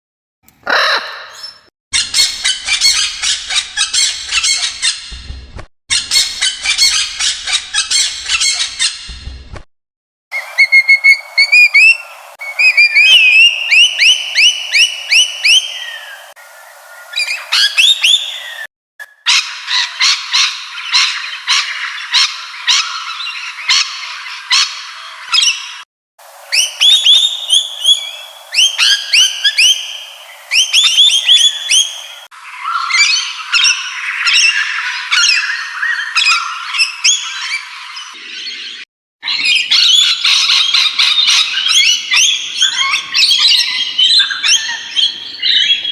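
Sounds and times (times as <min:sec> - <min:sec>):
parrots whistling: 0:00.6 - 0:04.9, 0:10.3 - 0:16.2, 0:17.2 - 0:18.6, 0:26.5 - 0:37.6, 0:39.2 - 0:45.9
parrots squawking: 0:00.6 - 0:05.0, 0:05.9 - 0:08.9, 0:19.3 - 0:25.7, 0:26.5 - 0:37.9, 0:39.2 - 0:45.9.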